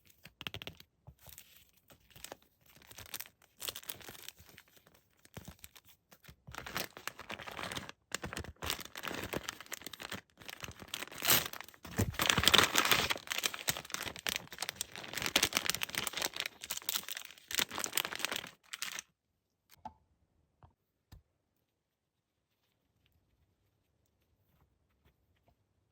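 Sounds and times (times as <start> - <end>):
packaging tearing and crinkling: 2.2 - 4.6, 6.5 - 19.0.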